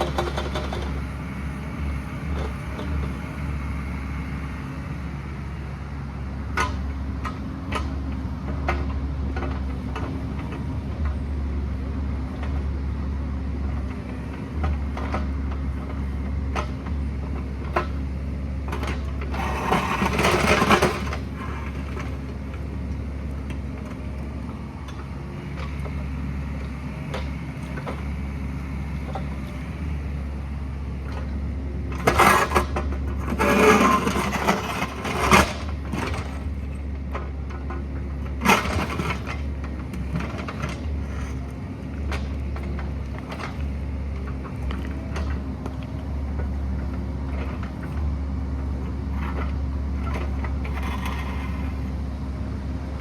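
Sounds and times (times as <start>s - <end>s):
excavator scraping and knocking rock: 0.0s - 3.7s, 13.7s - 18.0s, 18.6s - 28.2s, 28.8s - 30.0s, 31.0s - 53.0s
excavator engine running: 0.0s - 53.0s.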